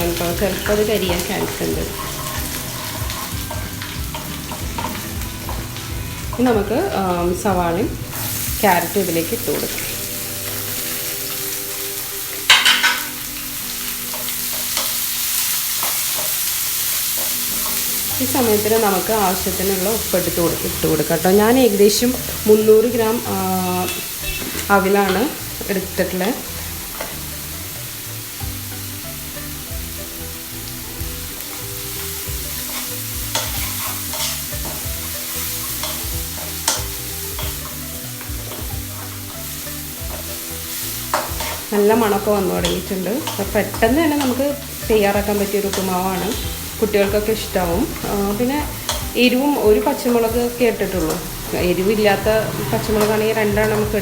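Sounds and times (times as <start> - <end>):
vegetables sizzling in oil: 0.0 - 54.0
utensil scraping against pan: 0.2 - 6.4, 32.0 - 47.1.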